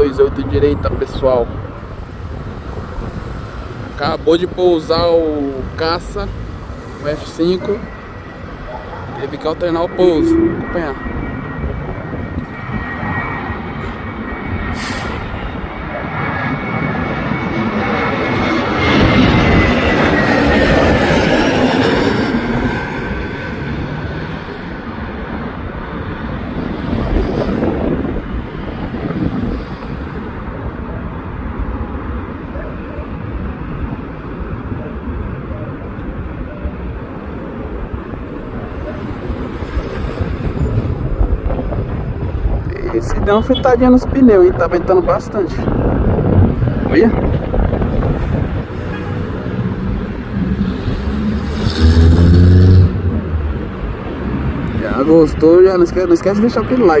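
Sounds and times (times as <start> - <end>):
wind buffeting microphone: 0.0 - 55.5
jet aircraft engines running: 0.0 - 57.0
high whine: 1.5 - 44.6.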